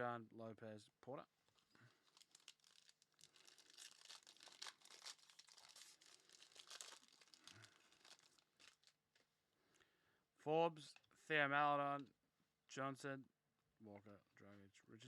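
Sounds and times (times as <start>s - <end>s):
foil wrapper crinkling: 1.5s - 9.0s.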